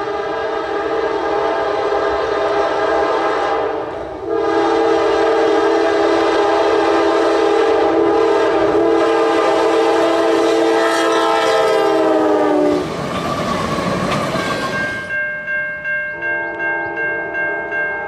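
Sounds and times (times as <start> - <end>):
locomotive air horn blast: 0.0 - 12.9
train wheels rumbling and clattering: 12.2 - 15.2
pulsing ringing bell tone: 14.7 - 18.0.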